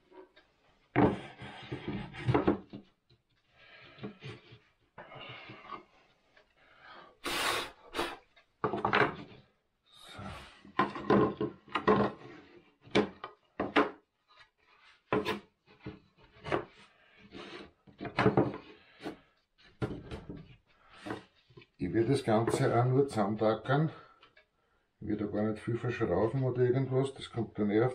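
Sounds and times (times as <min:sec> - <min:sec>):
wooden boards scraping and knocking: 0:00.9 - 0:02.9, 0:08.6 - 0:09.4, 0:10.6 - 0:22.9.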